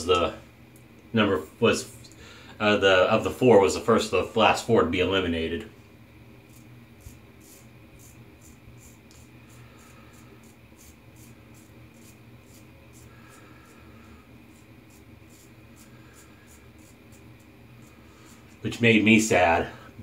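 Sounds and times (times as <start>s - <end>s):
razor scraping through stubble: 6.5s - 18.7s.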